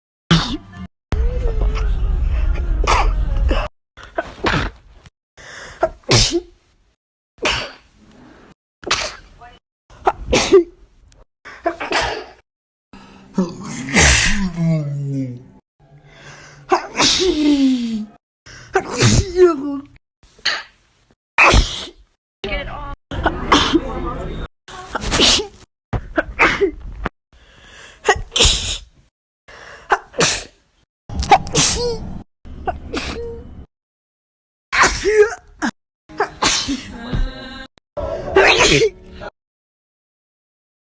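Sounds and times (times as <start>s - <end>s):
woman sneezing: 16.7s - 18.1s, 24.9s - 25.5s, 28.0s - 28.8s, 31.5s - 32.0s, 36.2s - 37.3s, 38.3s - 39.0s.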